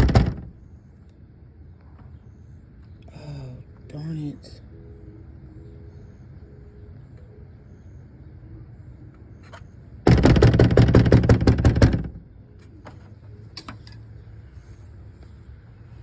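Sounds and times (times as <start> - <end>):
door rattling and banging: 0.0 - 0.6, 10.0 - 12.2.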